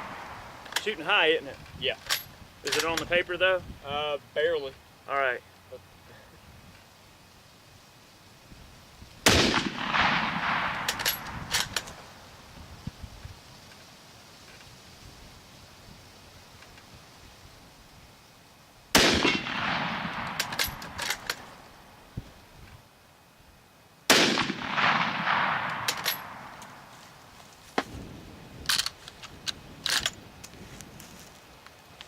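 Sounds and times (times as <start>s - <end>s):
rifle shots echoing: 0.0s - 0.9s, 9.2s - 12.2s, 18.9s - 21.6s, 24.1s - 26.9s
rifle bolt metallic clacks: 2.0s - 3.1s, 10.8s - 12.0s, 20.2s - 21.5s, 25.6s - 26.8s, 28.7s - 30.2s.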